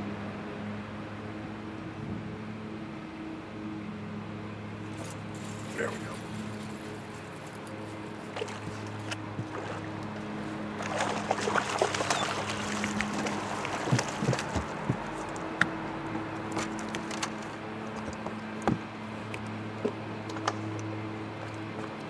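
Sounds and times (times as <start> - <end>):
water splashing at boat: 8.3 - 15.4.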